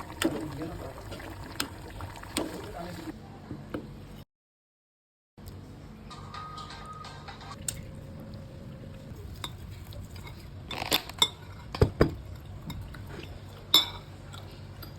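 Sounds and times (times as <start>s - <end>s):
low background hum: 5.4s - 14.9s
kitchenware clinking and knocking: 10.7s - 12.2s.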